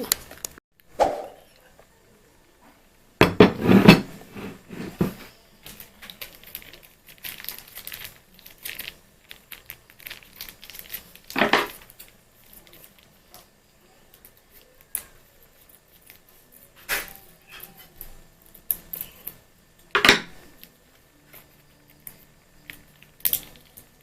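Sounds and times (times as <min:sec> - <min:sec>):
cookware clattering: 0:03.2 - 0:05.3, 0:19.9 - 0:20.4
plastic packaging crinkling: 0:05.4 - 0:13.5, 0:20.4 - 0:24.0.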